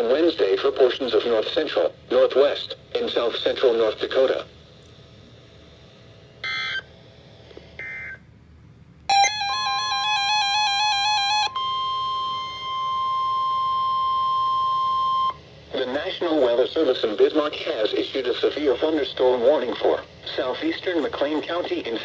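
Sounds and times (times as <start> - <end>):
steady warning alarm tone: 6.4 - 6.8, 9.1 - 15.4
alternating pitch alarm: 9.1 - 15.4.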